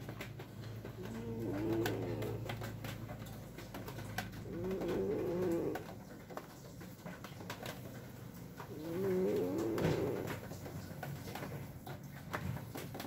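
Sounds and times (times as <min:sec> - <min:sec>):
cat snoring: 0:00.9 - 0:02.7, 0:04.2 - 0:06.0, 0:08.6 - 0:10.6.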